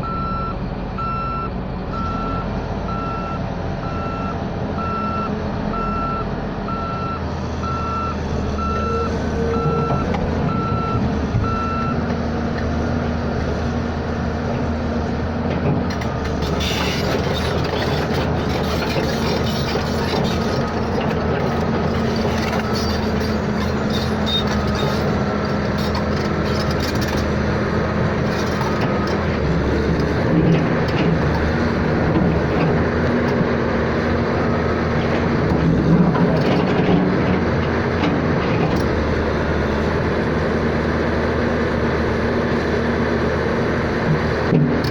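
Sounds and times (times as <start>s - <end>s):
vehicle warning beeps: 0.0s - 12.0s
engine running: 0.0s - 44.9s.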